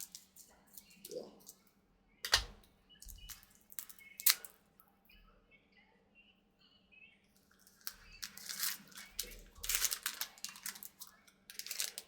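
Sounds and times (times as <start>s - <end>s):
foil wrapper crinkling and tearing: 0.0s - 1.6s, 3.1s - 4.5s, 7.5s - 12.0s.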